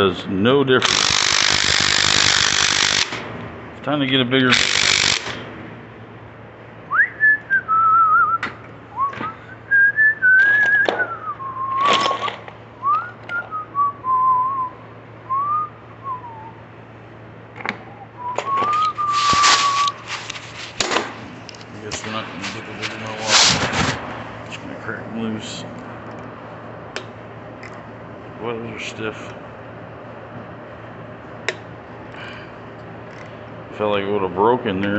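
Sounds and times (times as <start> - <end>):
person whistling a tune: 6.9 - 16.6, 17.9 - 20.0.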